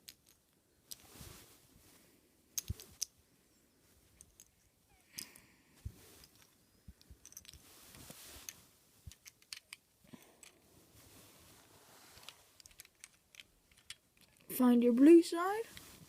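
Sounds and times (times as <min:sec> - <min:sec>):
plastic puzzle pieces clicking: 0:00.0 - 0:01.0, 0:02.6 - 0:03.1, 0:09.1 - 0:10.6, 0:12.2 - 0:14.5.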